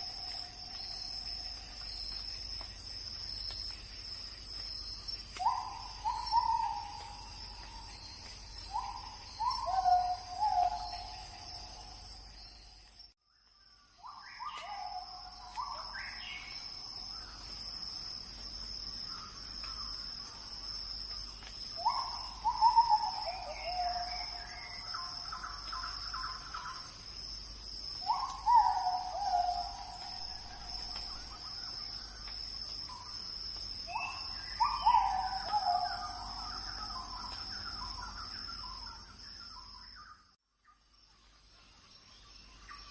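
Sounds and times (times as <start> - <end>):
high insect drone: 0.0 - 40.2.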